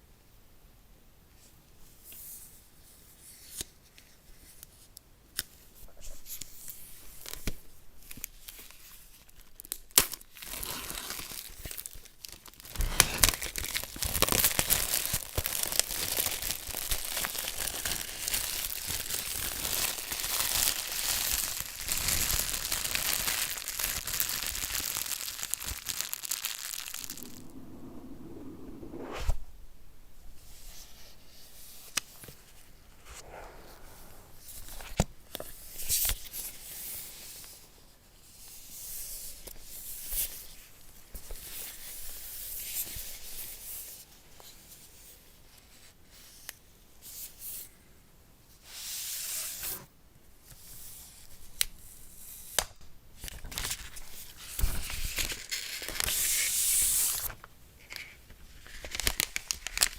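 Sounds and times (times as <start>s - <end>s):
packaging tearing and crinkling: 9.4s - 27.6s, 53.4s - 59.9s.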